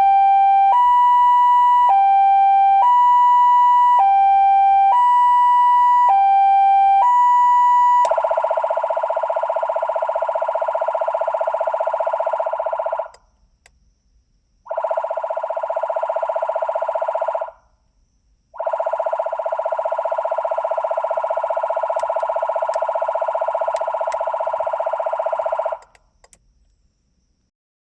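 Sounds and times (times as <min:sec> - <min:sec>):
siren horn blasts: 0:00.0 - 0:08.4
two-tone police siren: 0:00.0 - 0:13.2, 0:14.7 - 0:17.6, 0:18.6 - 0:26.0.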